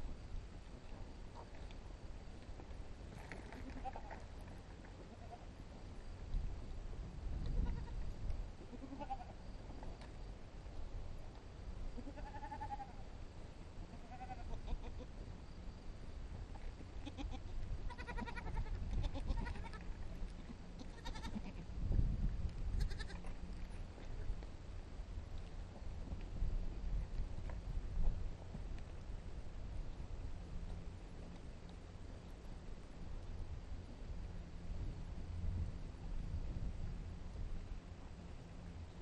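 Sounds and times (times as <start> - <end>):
goats bleating: 12.0 - 12.8, 17.0 - 19.8, 20.4 - 21.6.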